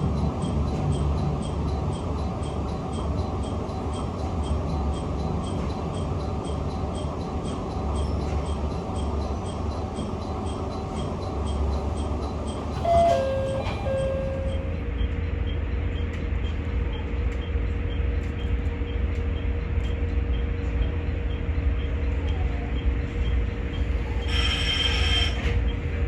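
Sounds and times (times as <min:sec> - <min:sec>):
railcar running: 0:00.0 - 0:26.0
electronic warning tone: 0:07.9 - 0:14.9.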